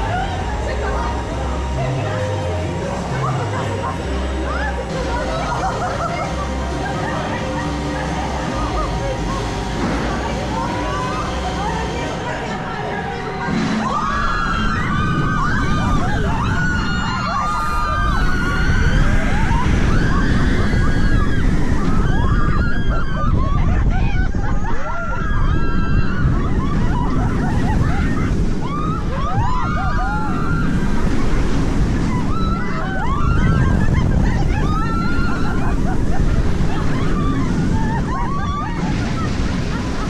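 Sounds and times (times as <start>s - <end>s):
wind rushing over microphone: 0.0s - 40.0s
riders screaming: 13.2s - 40.0s.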